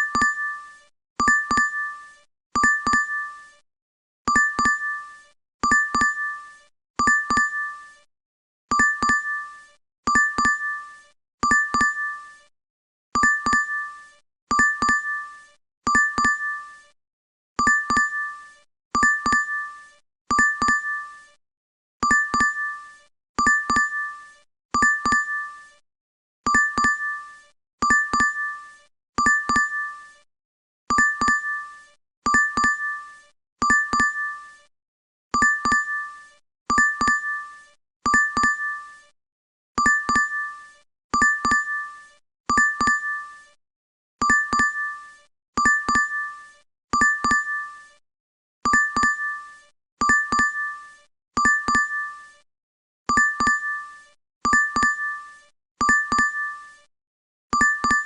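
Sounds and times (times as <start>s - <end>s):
notification chime ding: 53.2s - 53.8s, 55.8s - 56.5s, 57.6s - 58.0s.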